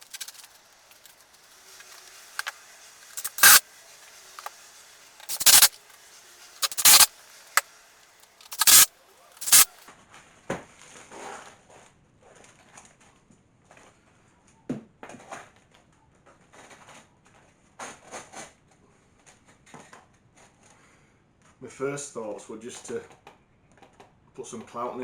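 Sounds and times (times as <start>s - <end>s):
handling noise: 0.0s - 0.6s, 3.1s - 3.6s, 5.2s - 5.8s, 6.6s - 7.1s, 8.4s - 9.7s.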